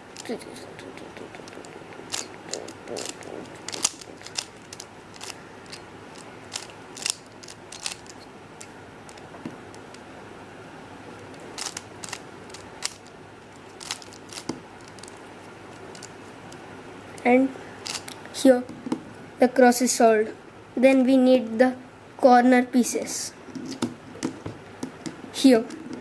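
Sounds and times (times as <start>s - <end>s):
plastic puzzle cube clicking: 0.9s - 9.2s, 11.6s - 13.1s, 13.7s - 15.1s, 15.9s - 16.1s, 17.9s - 18.2s.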